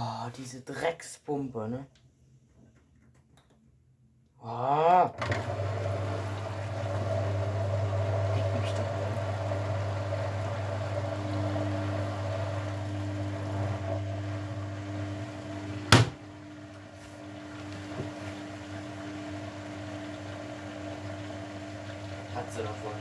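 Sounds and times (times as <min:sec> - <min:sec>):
drain pump humming: 0:05.1 - 0:23.0.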